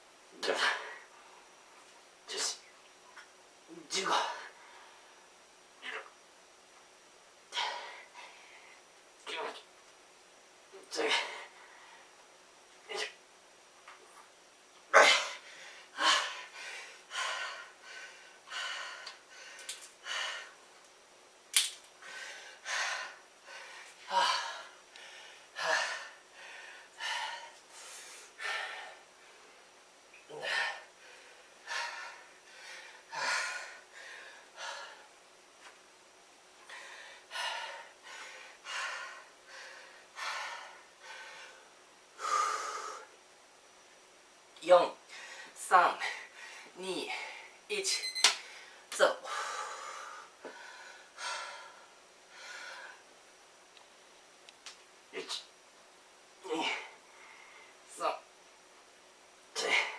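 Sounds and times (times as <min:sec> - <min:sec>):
man panting: 0:07.5 - 0:08.7, 0:10.9 - 0:12.0, 0:15.0 - 0:20.6, 0:22.0 - 0:29.2, 0:30.3 - 0:35.2, 0:36.6 - 0:43.2, 0:45.1 - 0:47.6, 0:49.2 - 0:53.1, 0:56.4 - 0:57.0, 0:59.6 - 0:59.9
man breathing hard: 0:07.5 - 0:08.9, 0:15.0 - 0:20.6, 0:22.0 - 0:29.6, 0:30.3 - 0:35.2, 0:36.6 - 0:43.2, 0:45.1 - 0:47.6, 0:48.5 - 0:53.1.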